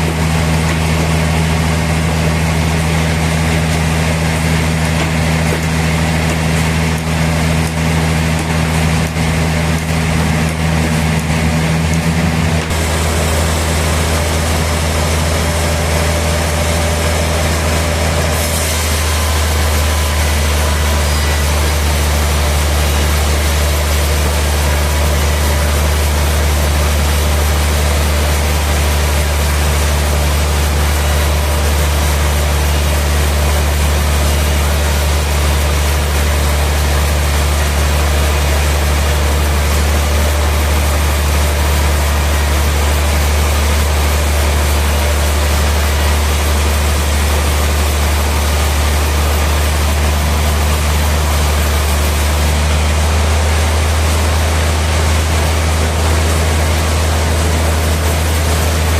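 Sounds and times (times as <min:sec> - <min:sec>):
sawmill machinery humming: 0:00.0 - 0:58.9.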